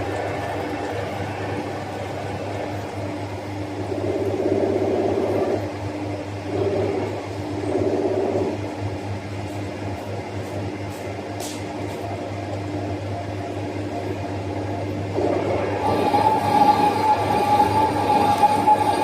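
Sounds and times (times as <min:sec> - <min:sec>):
excavator engine drone: 0:00.0 - 0:09.3, 0:12.8 - 0:19.0.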